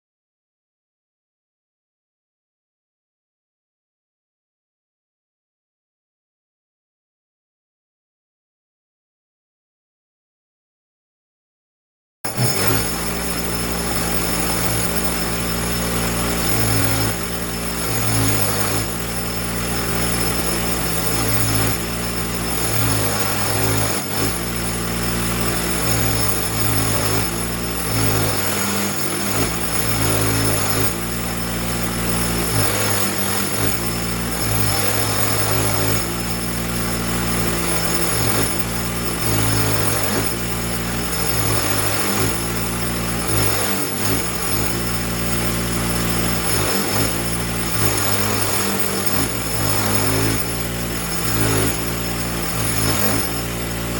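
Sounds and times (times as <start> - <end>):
wire wheel brushing rust off metal: 12.3 - 53.9.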